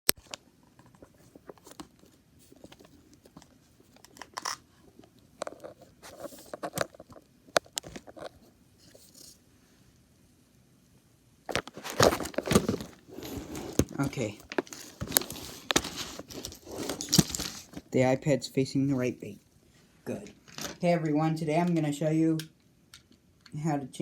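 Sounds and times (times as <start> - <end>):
hands handling objects: 0.1 - 9.4, 11.5 - 18.0.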